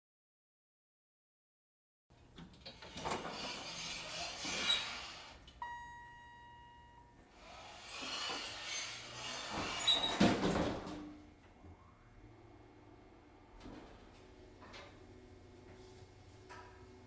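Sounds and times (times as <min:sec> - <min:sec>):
elevator doors sliding: 0:02.4 - 0:06.4, 0:07.4 - 0:11.1
chime tone: 0:05.6 - 0:07.2
doors shutting with thud: 0:09.4 - 0:11.1.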